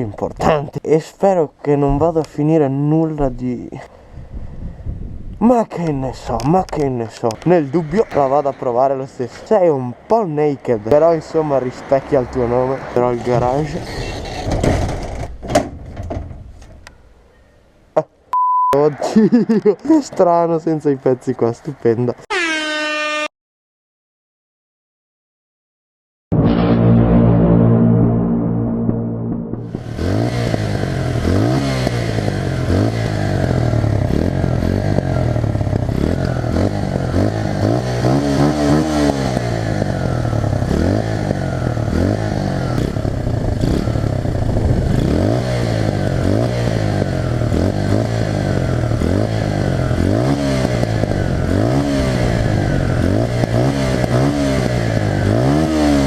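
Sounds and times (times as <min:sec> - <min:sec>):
motorcycle engine revving: 0:29.3 - 0:56.0.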